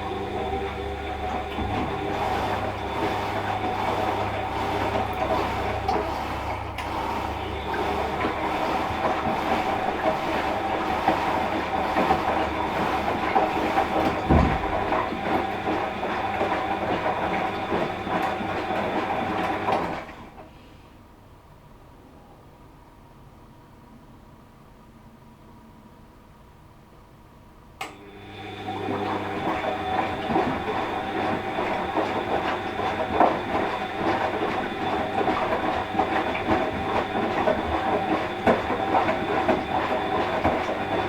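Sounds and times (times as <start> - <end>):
washing machine whining and rattling: 0.0 - 23.3, 27.3 - 41.0
low thump: 14.2 - 14.9.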